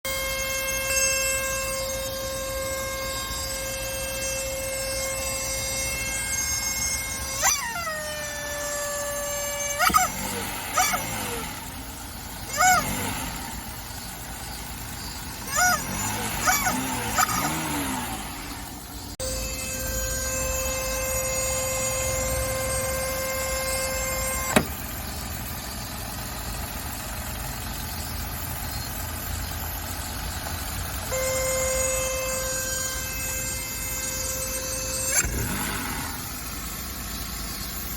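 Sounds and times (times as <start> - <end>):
car engine idling: 0.0 - 37.9
whining tone from engine bay: 0.0 - 37.9
rubber chicken toy wailing: 6.5 - 11.6, 12.5 - 13.0, 15.4 - 17.8.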